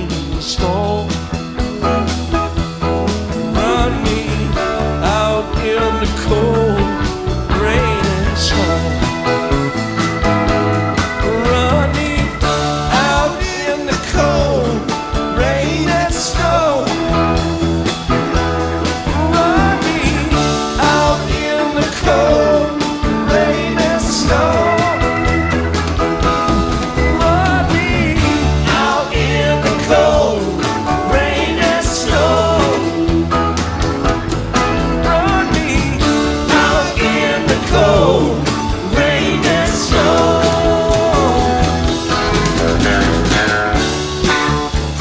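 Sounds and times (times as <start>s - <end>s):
bass line: 0.0s - 45.0s
drums: 0.0s - 45.0s
electric guitar bending notes: 7.0s - 14.6s, 17.0s - 45.0s.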